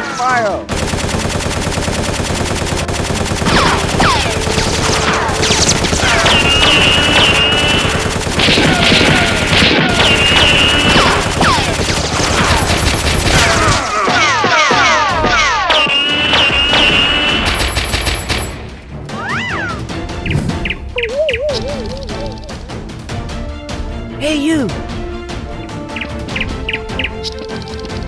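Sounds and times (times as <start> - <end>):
rapid automatic gunfire: 0.7 - 13.9, 15.8 - 18.5
falling whistling tones: 20.1 - 21.2.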